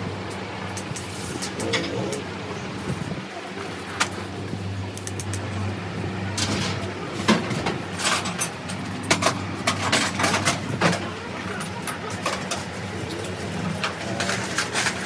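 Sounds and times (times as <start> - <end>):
steady low hum: 0.0 - 15.0
metallic knocks and clicks: 5.0 - 5.4.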